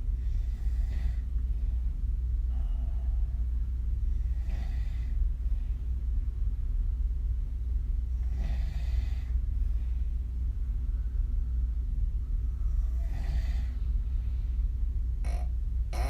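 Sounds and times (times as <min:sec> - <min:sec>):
steady low hum: 0:00.0 - 0:16.0
woman snoring: 0:15.3 - 0:16.0.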